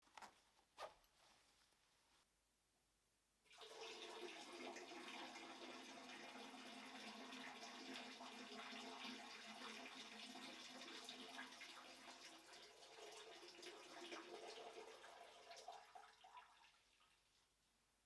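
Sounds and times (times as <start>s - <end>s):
urine splashing into toilet water: 3.5s - 17.2s.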